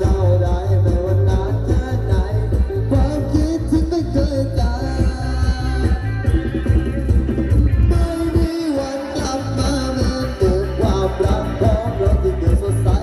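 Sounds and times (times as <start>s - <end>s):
loud rock music: 0.0s - 13.0s
person singing: 0.0s - 13.0s.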